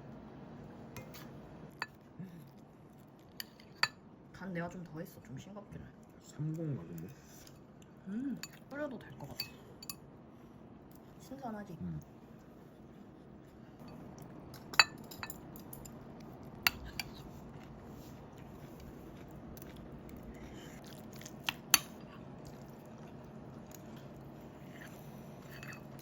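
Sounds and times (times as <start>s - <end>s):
faint low hum: 0.0s - 26.0s
metal utensils clinking on dishes: 14.6s - 16.0s.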